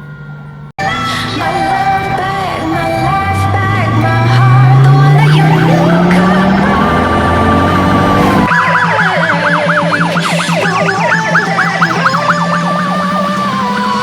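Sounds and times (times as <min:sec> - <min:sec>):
fire engine siren yelping: 0:02.8 - 0:14.0
slower sweeping siren: 0:04.4 - 0:14.0.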